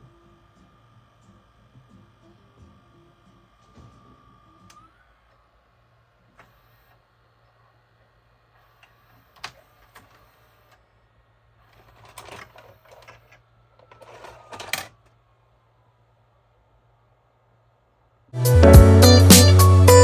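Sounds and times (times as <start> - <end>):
mechanical clicks and rattling: 11.8 - 15.0.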